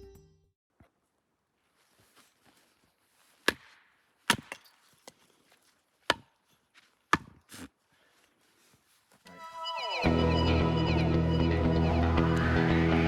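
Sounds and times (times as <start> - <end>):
axe chopping firewood: 3.3 - 5.3, 6.0 - 7.7.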